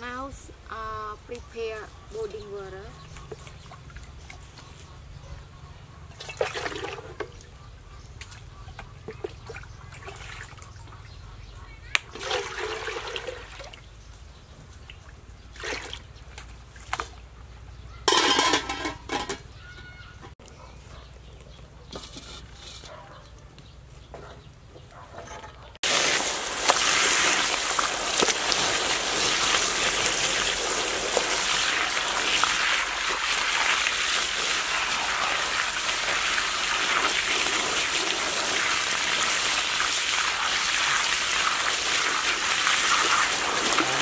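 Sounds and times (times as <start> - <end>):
water boiling in a pot: 25.8 - 44.0.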